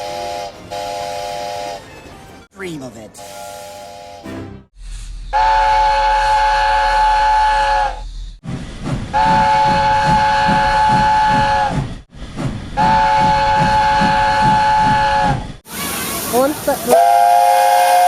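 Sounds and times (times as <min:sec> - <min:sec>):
steam train whistle blasts: 0:00.0 - 0:01.8, 0:03.2 - 0:04.6, 0:12.8 - 0:15.4, 0:16.9 - 0:18.0.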